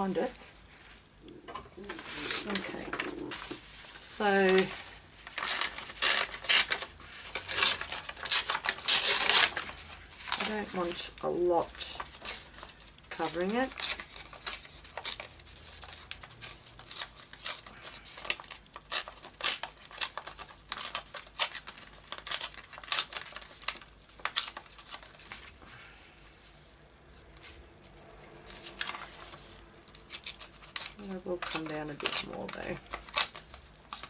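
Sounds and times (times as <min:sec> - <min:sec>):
scissors snipping paper: 0:13.1 - 0:25.0, 0:30.0 - 0:34.0.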